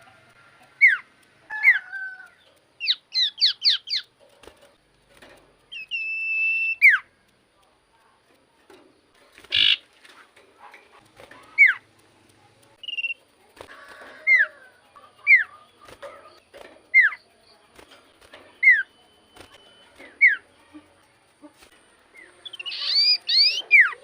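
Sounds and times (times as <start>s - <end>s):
bird harsh rasp: 9.4s - 9.9s.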